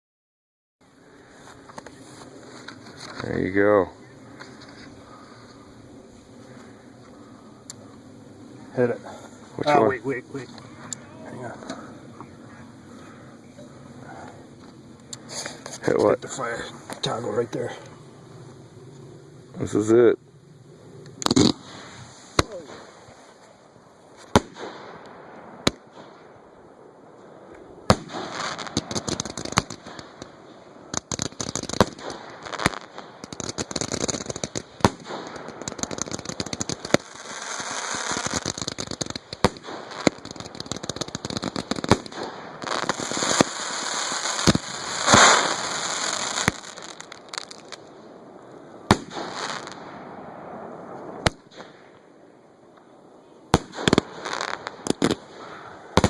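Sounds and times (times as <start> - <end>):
fireworks crackling and popping: 1.0 - 56.0
firework booms: 21.2 - 23.2, 24.2 - 51.9, 53.5 - 56.0.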